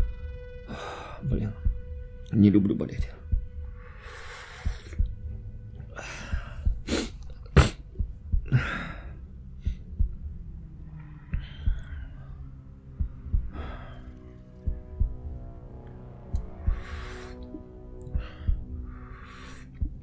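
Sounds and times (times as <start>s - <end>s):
faint low thumps: 0.0s - 19.0s
hoarse coughs: 7.5s - 7.8s
man breathing out heavily: 8.5s - 9.9s.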